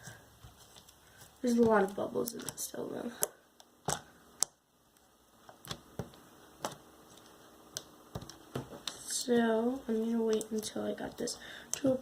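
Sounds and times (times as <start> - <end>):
slime clicking and popping: 1.7 - 4.6.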